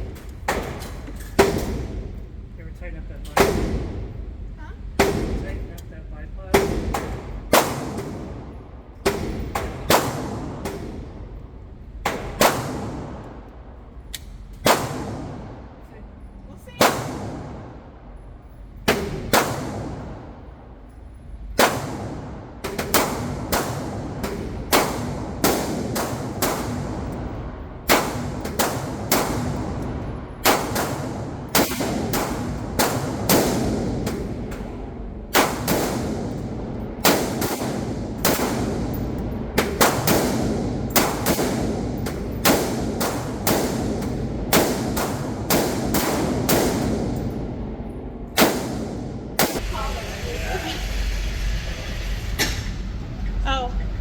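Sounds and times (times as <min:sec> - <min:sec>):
gunshots: 0:06.5 - 0:11.2, 0:12.0 - 0:13.3, 0:14.6 - 0:15.7, 0:16.7 - 0:17.8, 0:18.9 - 0:20.4, 0:21.6 - 0:47.4, 0:48.4 - 0:49.6.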